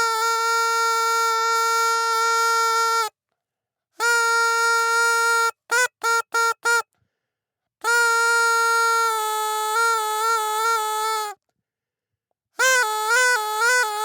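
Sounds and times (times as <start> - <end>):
party horn blowing: 0.0 - 3.2, 4.0 - 6.9, 7.8 - 11.4, 12.6 - 14.0.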